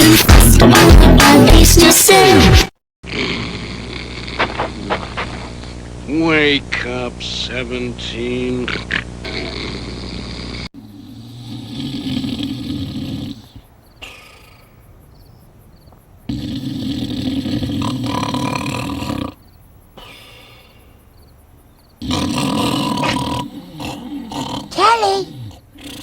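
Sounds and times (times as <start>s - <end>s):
person snoring: 3.1s - 5.8s, 9.2s - 14.7s, 16.3s - 19.4s
breathy exhale: 20.0s - 21.0s.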